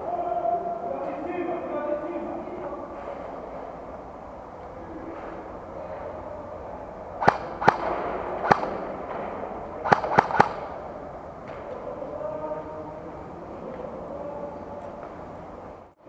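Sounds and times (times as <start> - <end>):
airsoft gun shots: 7.2 - 9.2, 9.8 - 10.9.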